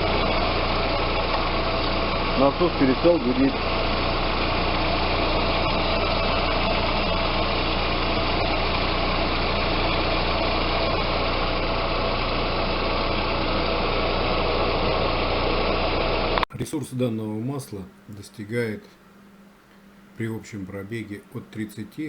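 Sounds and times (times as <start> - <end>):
car engine idling: 0.0 - 16.4.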